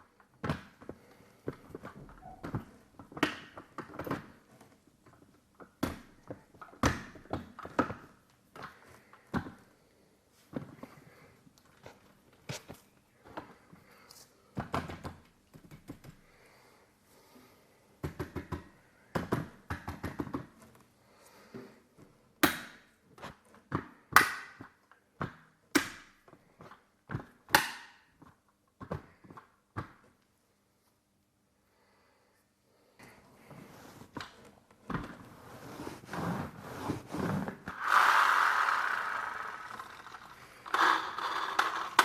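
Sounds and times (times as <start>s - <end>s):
model car clicks and knocks: 38.7s - 42.0s.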